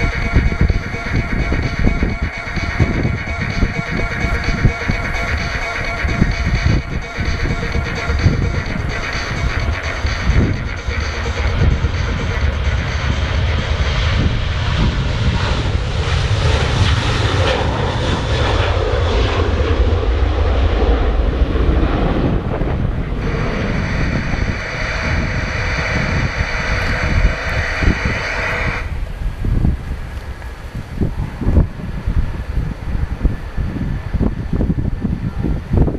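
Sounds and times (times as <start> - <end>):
airliner engines roaring: 0.0 - 35.9
jet engine whine: 0.0 - 35.9.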